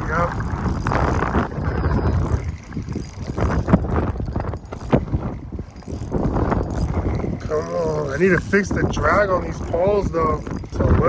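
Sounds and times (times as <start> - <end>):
wind on microphone: 0.0 - 11.0.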